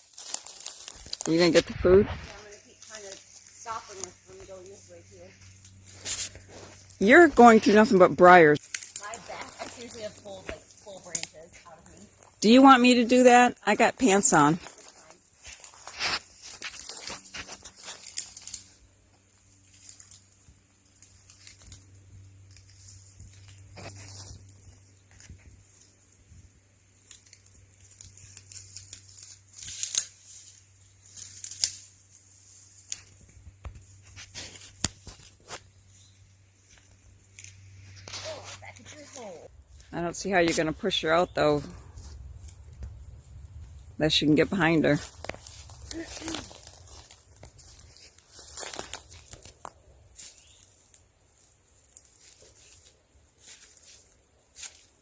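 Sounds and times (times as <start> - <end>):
twigs snapping: 0.0 - 1.5, 8.6 - 12.4, 14.6 - 25.9, 26.9 - 39.9, 45.0 - 55.0
sharp cracks of branches: 0.0 - 4.6, 8.6 - 12.4, 14.6 - 26.0, 26.9 - 39.8, 45.0 - 55.0
brush rustling and crackling: 0.0 - 55.0.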